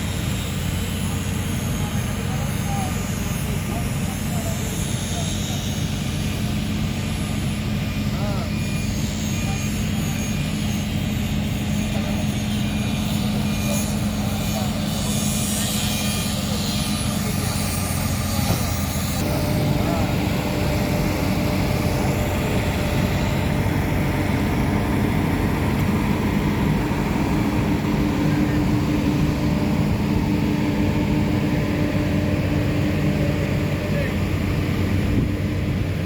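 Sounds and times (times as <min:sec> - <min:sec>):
vehicle engine and road noise: 0:00.0 - 0:36.0.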